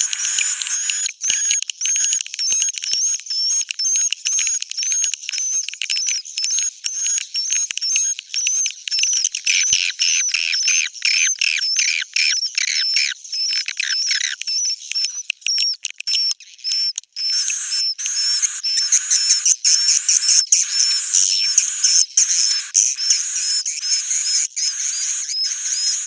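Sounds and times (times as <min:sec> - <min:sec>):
swiftlet chirps and trills: 0:17.2 - 0:26.0.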